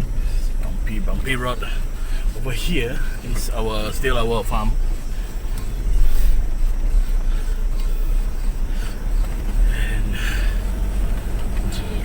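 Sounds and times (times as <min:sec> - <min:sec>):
vehicle rumbling on dirt road: 0:00.0 - 0:12.0.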